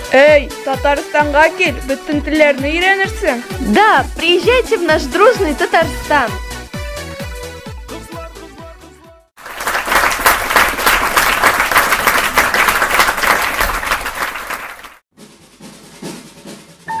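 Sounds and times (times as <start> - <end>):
crowd applauding: 9.4 - 15.0.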